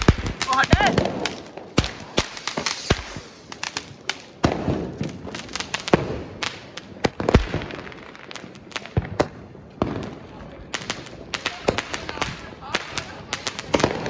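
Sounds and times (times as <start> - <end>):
firecrackers banging: 0.0 - 14.0.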